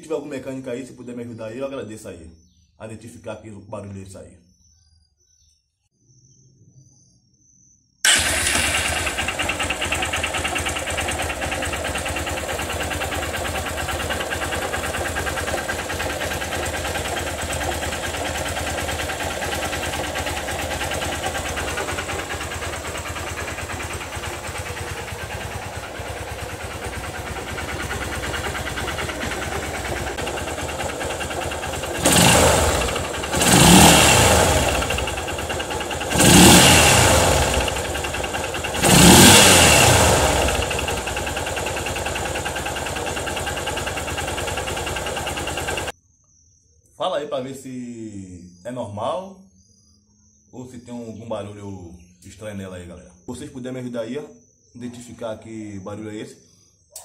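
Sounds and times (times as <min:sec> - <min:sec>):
motorcycle engine idling and revving: 0:08.1 - 0:45.9.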